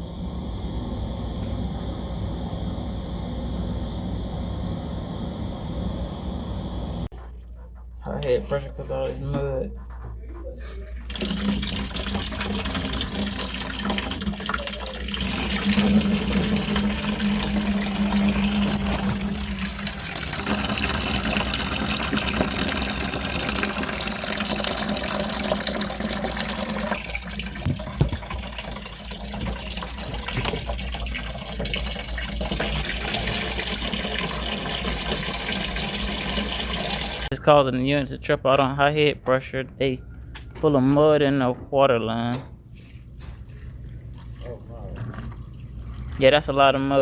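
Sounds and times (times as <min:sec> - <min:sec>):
low hum: 0:00.0 - 0:07.1, 0:12.4 - 0:24.9
water rushing out of a pipe: 0:11.1 - 0:37.3.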